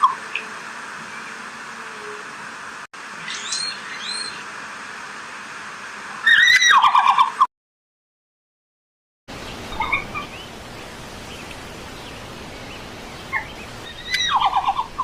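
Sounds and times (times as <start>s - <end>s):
background hiss: 9.3s - 15.0s.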